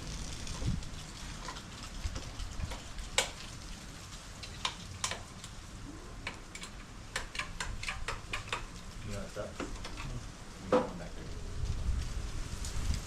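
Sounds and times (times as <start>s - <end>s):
hand tools clicking on metal: 6.2s - 8.8s.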